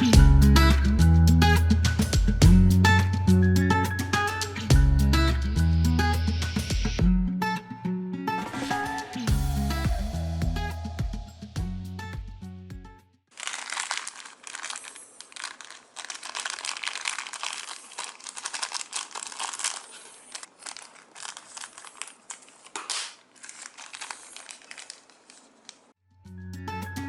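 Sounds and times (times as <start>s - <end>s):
crinkling and crackling: 13.3s - 26.0s.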